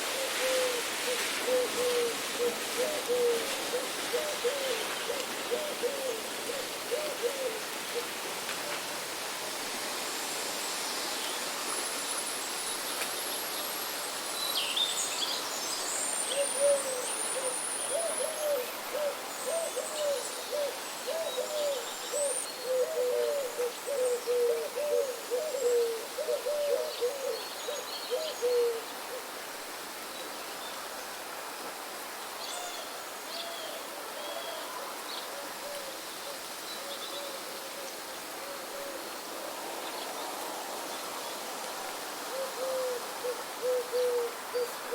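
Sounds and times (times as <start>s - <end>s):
steady hiss: 0.0s - 44.9s
low hooting bird calls: 42.3s - 44.9s.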